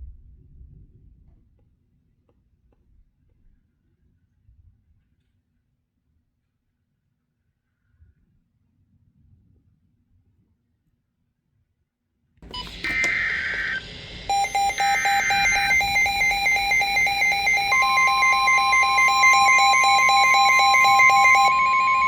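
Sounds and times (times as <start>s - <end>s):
high alarm tones and beeps: 12.4s - 22.0s
steady single alarm tone: 12.4s - 22.0s.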